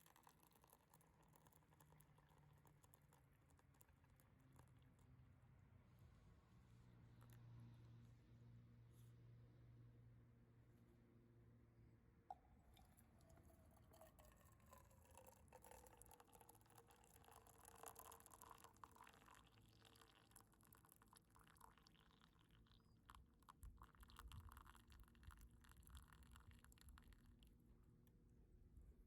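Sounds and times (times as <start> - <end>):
faint liquid pouring: 0.0 - 5.6, 12.3 - 28.2.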